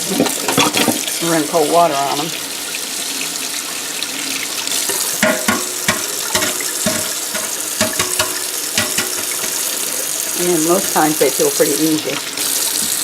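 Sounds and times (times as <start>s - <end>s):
tap running water into sink: 0.0s - 13.0s
eggs clinking and knocking: 4.8s - 11.1s.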